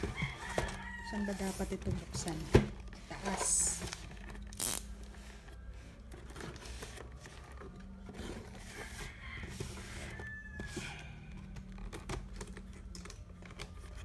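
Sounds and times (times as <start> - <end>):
packaging rustling and scraping: 0.0 - 14.0
packaging ripping: 4.5 - 5.0.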